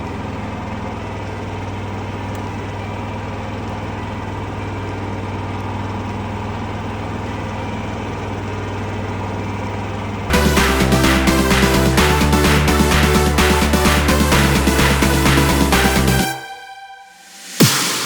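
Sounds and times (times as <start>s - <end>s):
generator humming: 0.0s - 18.0s
electronic music: 10.3s - 18.0s.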